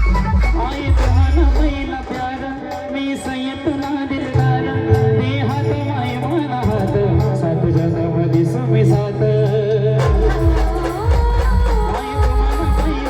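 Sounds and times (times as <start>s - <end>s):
keyboard: 0.0s - 13.0s
woman singing: 8.7s - 13.0s.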